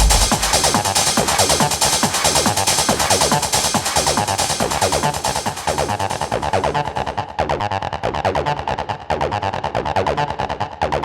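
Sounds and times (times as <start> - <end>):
techno music with driving beat: 0.0 - 7.1.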